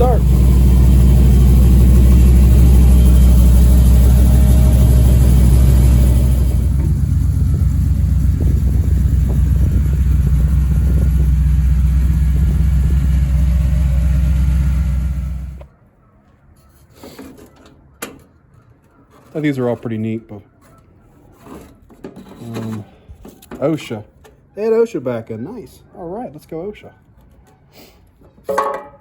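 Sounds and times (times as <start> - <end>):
engine running: 0.0 - 15.7.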